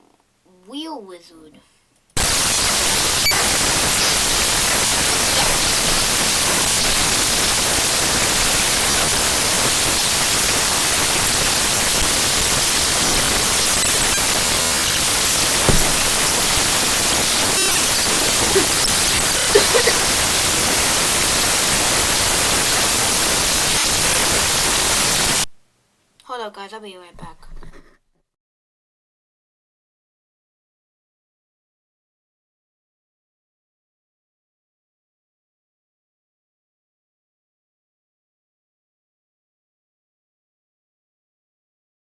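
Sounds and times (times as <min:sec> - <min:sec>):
loud static hiss: 0:02.2 - 0:27.4.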